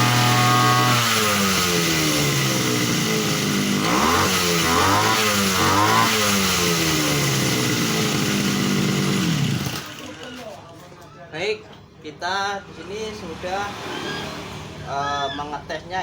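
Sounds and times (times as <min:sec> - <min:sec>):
small petrol engine revving: 0:00.0 - 0:10.6.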